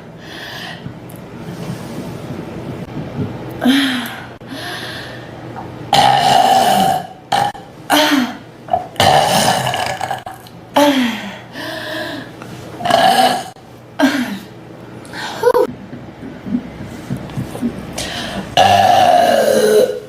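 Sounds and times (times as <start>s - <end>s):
woman burping: 5.9s - 10.9s, 12.8s - 14.5s, 18.6s - 20.0s.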